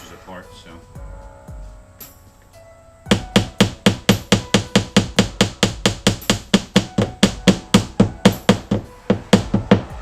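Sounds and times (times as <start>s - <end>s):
hammer tapping: 3.1s - 9.9s.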